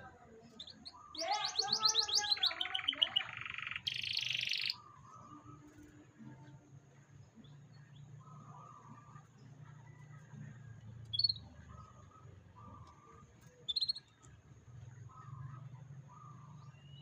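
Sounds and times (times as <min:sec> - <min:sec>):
canary singing trills: 0:00.4 - 0:05.9, 0:11.0 - 0:14.4.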